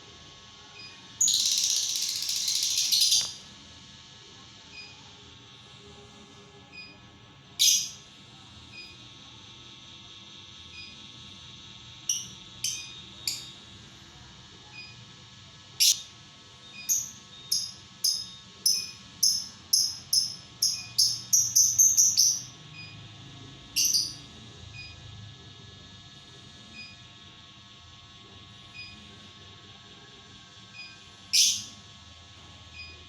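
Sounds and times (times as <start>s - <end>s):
lovebird chirping: 15.8s - 16.0s, 16.9s - 22.5s, 23.8s - 24.2s.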